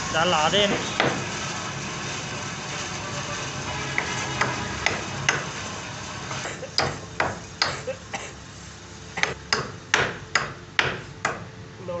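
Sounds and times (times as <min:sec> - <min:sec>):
hammer knocks: 0:00.7 - 0:01.3.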